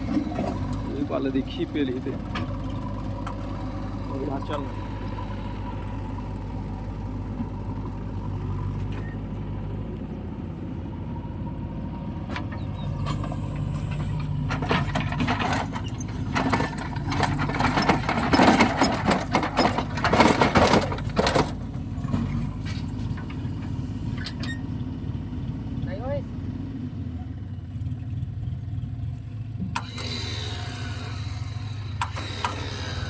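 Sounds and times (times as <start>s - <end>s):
diesel engine running: 0.0s - 33.0s
earth clattering into trailer: 12.4s - 24.4s.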